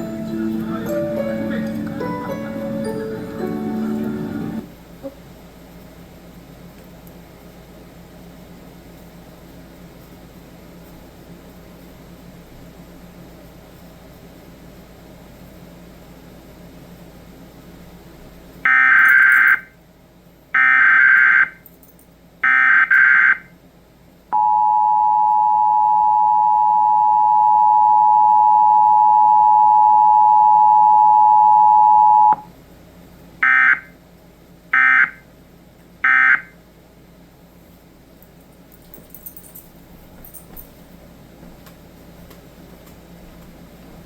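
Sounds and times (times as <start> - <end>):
two-tone attention signal: 24.4 - 32.4.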